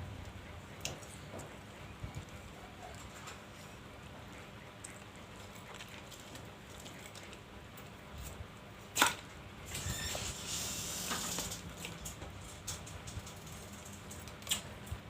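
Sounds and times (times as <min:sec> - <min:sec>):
wet crackly eating noise: 0:00.7 - 0:08.4.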